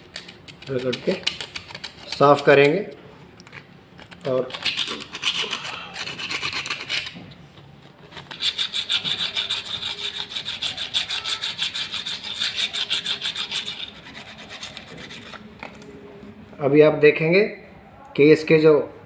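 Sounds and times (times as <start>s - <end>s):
emery paper scraping metal: 8.0s - 15.6s.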